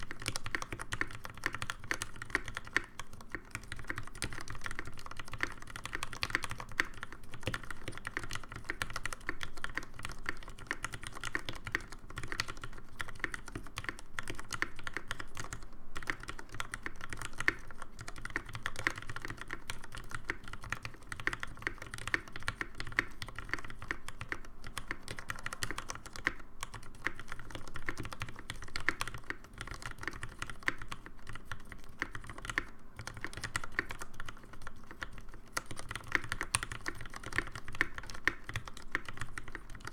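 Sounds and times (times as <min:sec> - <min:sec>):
mechanical keyboard typing: 0:00.0 - 0:39.9.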